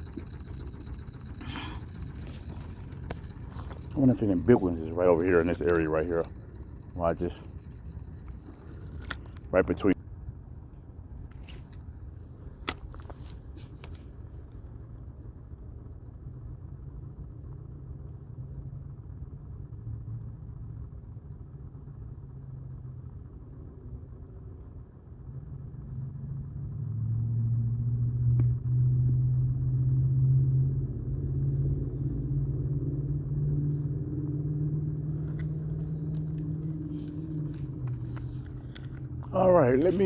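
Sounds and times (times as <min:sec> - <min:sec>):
low engine rumble: 0:00.0 - 0:40.0.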